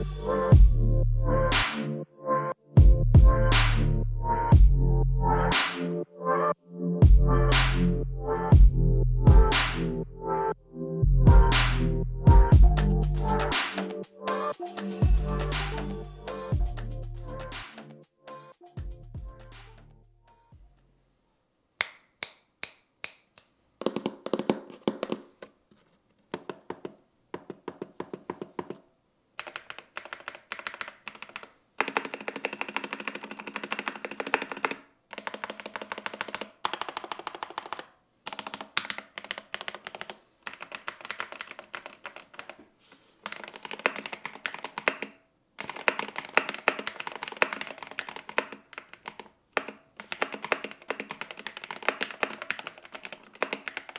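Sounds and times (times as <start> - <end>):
keyboard typing: 11.3 - 18.0, 29.4 - 42.6, 43.2 - 53.9.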